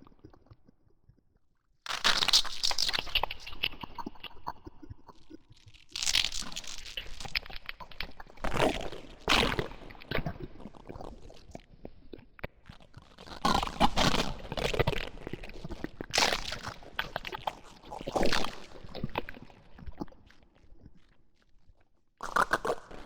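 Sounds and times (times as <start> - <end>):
monster crunching and chewing: 5.2 - 11.2.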